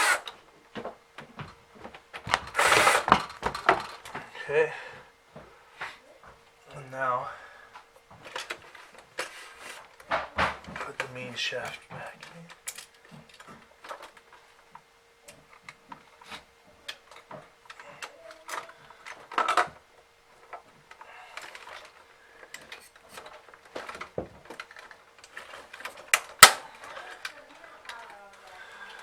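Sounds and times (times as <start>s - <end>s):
plastic parts rattling: 20.4s - 29.0s
plastic parts clicking: 20.5s - 29.0s.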